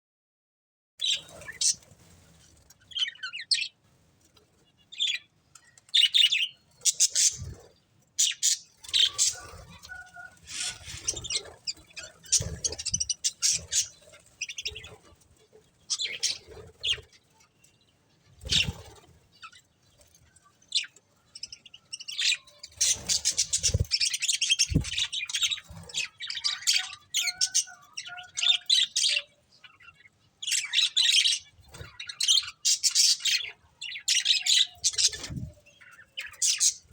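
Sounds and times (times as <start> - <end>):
budgerigars chirping: 8.2 - 14.9.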